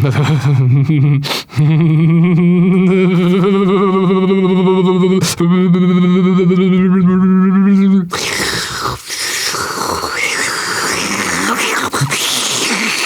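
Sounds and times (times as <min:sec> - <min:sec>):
man humming droning note: 0:01.7 - 0:08.1.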